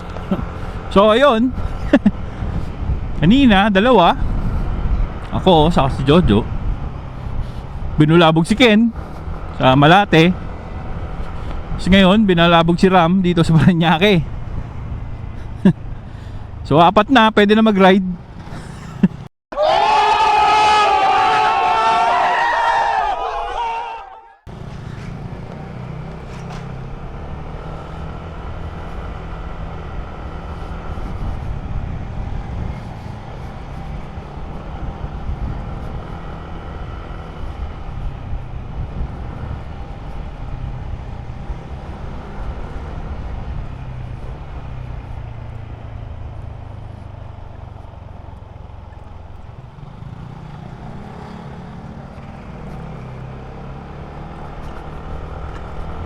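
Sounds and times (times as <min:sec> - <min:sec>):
motor scooter engine drone: 0:00.0 - 0:56.0
road and wind noise: 0:00.0 - 0:56.0.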